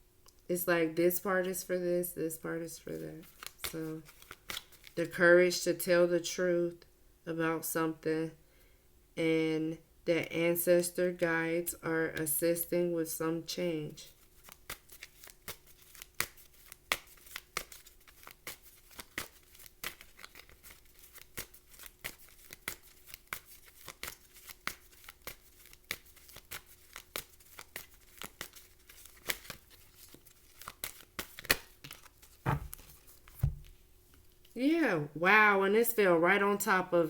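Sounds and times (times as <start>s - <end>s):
cards being shuffled: 3.2s - 5.0s, 14.1s - 33.8s
dull thumps: 32.5s - 33.8s.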